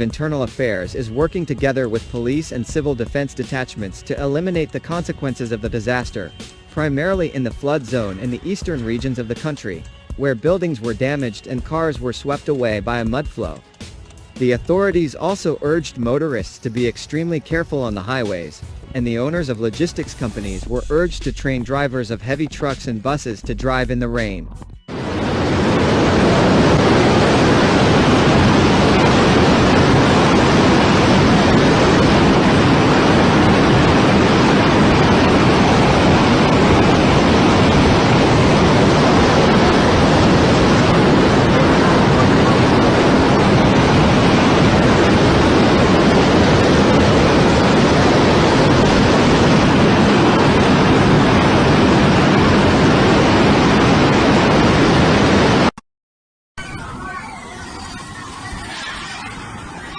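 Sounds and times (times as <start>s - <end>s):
floodwater rushing roar: 24.9s - 55.7s.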